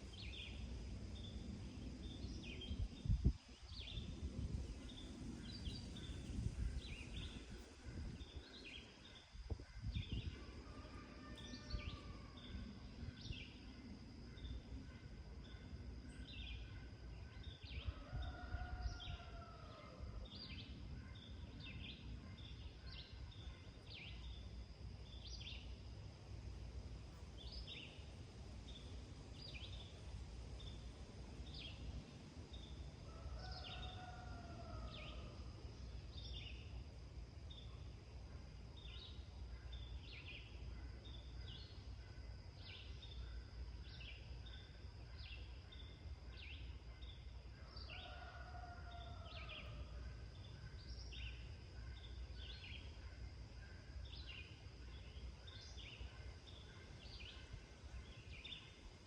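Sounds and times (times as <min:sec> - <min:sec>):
rooster crowing faintly: 0:10.4 - 0:12.7, 0:33.0 - 0:35.5, 0:47.6 - 0:50.1.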